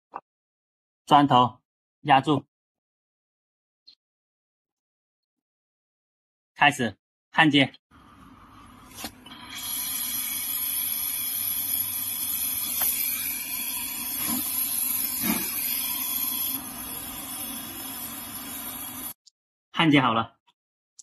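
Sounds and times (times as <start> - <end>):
gas torch hissing: 8.9 - 19.2.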